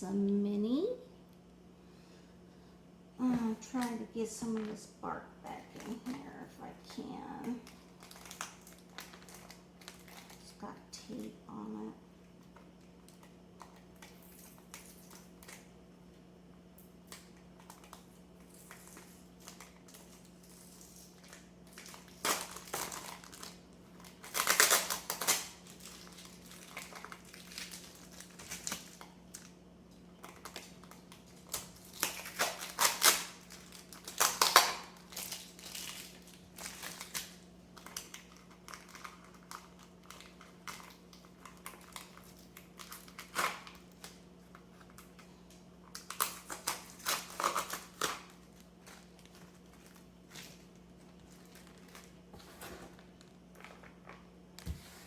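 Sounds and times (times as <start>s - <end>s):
steady low hum: 0.0s - 34.2s
plastic packaging crinkling: 5.4s - 11.3s, 16.8s - 55.0s.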